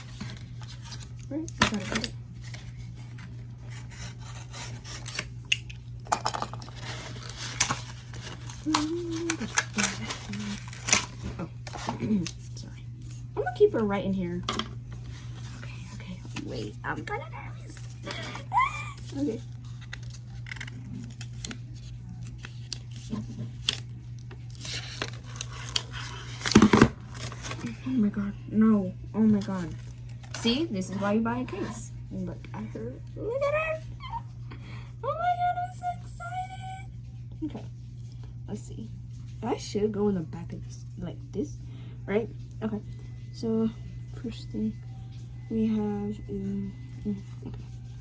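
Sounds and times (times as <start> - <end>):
hands handling packaging: 0.0 - 13.2, 17.6 - 27.9
paper and plastic rustling and tearing: 0.0 - 13.2, 17.6 - 28.1, 29.3 - 31.8
steady low hum: 0.0 - 48.0.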